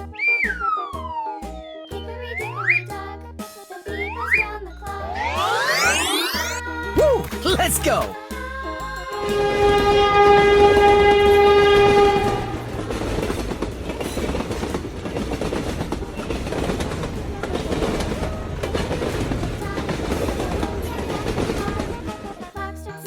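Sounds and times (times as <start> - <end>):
train horn: 9.3 - 13.0
train running on track: 9.4 - 22.4.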